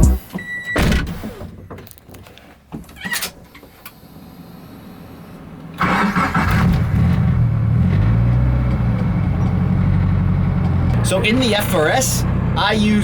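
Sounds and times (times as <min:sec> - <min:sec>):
car engine starting and idling: 0:03.9 - 0:13.0.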